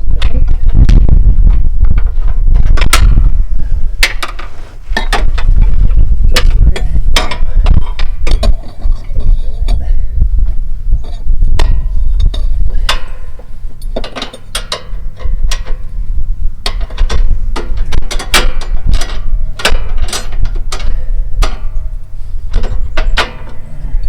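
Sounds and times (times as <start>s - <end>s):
steady low rumble: 0.0s - 24.0s
metallic clicks of tools: 11.6s - 16.0s, 16.6s - 21.9s.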